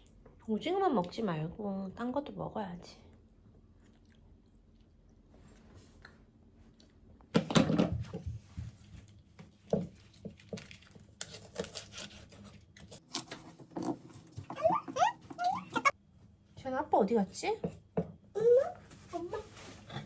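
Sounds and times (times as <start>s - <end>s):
chewing and crunching: 3.1s - 7.1s, 9.9s - 14.6s.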